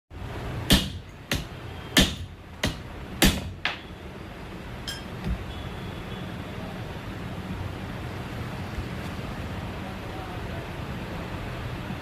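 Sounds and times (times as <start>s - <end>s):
hammer striking metal: 0.7s - 3.8s, 4.9s - 5.4s.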